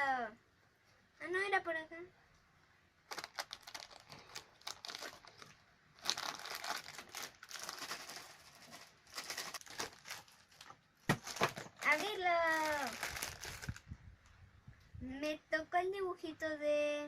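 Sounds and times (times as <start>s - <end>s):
plastic wrapper crinkling: 3.1s - 14.0s.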